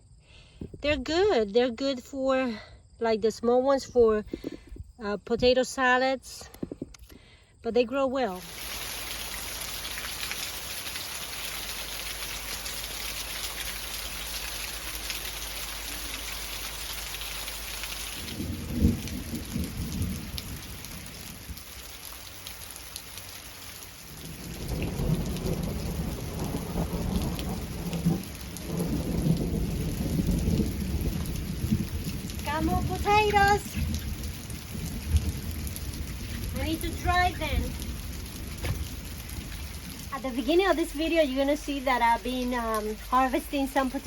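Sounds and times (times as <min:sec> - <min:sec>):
rain falling: 0:08.2 - 0:44.0.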